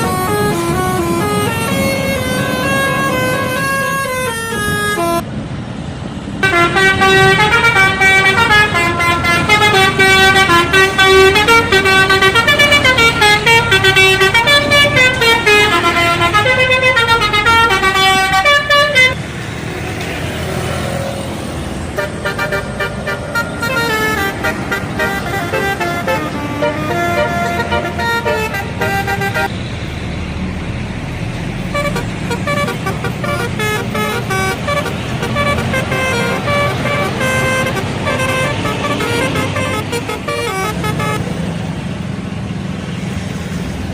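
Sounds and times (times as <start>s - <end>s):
multi-trumpet air horn tune: 0.0s - 5.2s, 6.4s - 19.2s, 22.0s - 29.5s, 31.7s - 41.2s
road noise: 0.0s - 43.9s.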